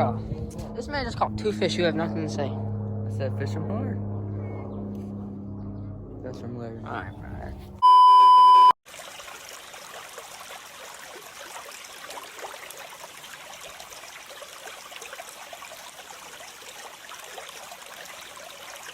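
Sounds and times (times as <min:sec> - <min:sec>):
creek water trickling: 0:08.8 - 0:18.9.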